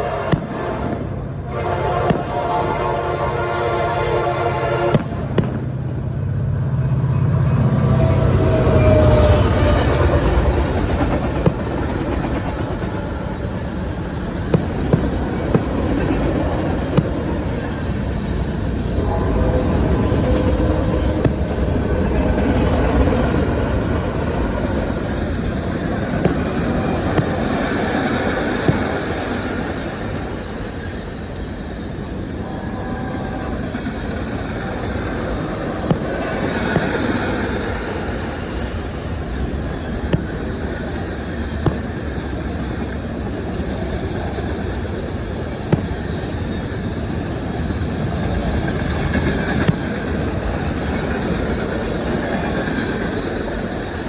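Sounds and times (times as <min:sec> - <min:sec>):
train rumbling past: 0:00.0 - 0:54.0
train wheels clacking: 0:08.9 - 0:18.2.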